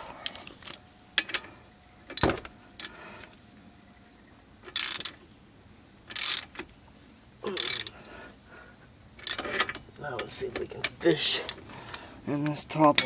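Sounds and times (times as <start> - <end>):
ratchet clicking: 4.6 - 5.2, 6.0 - 6.7, 7.6 - 8.0, 9.2 - 13.0.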